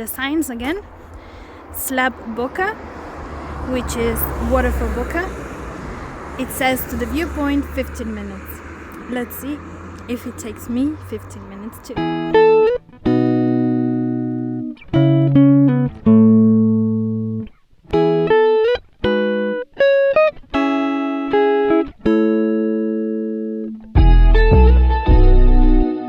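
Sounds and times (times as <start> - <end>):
plucked guitar chords: 11.4 - 26.0
deep bass: 24.0 - 25.9.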